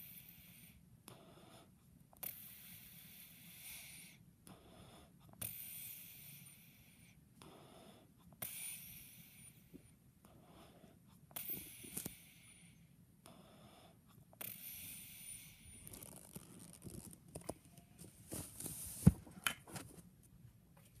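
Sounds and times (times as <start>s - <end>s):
rustling: 15.8s - 20.1s.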